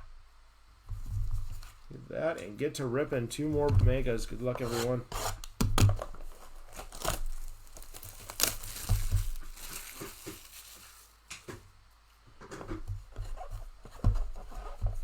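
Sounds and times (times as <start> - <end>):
plastic wrapping crinkling and tearing: 5.7 - 11.5.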